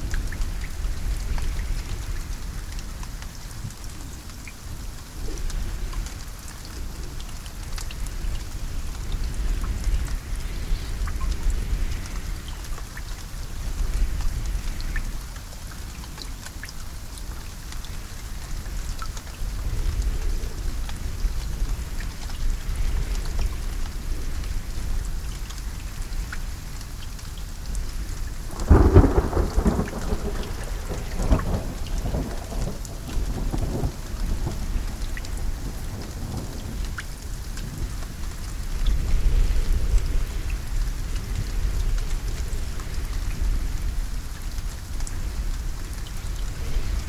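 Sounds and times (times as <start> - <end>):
steady rain: 0.0 - 47.0
thunder rumbling: 28.4 - 44.4, 45.3 - 47.0.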